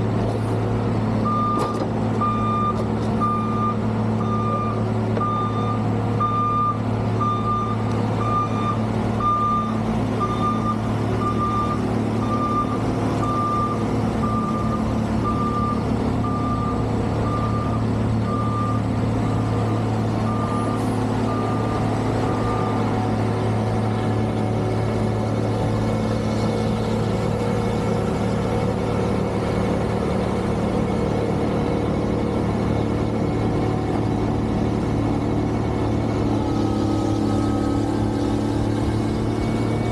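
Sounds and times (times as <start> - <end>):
low engine drone: 0.0 - 39.9
reversing alarm beeping: 1.2 - 23.1, 36.6 - 38.2.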